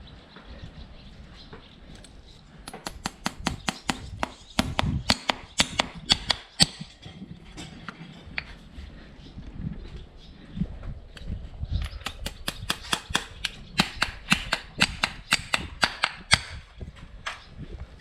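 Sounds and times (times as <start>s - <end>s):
hammer striking horseshoe: 2.7s - 7.0s, 12.0s - 16.6s.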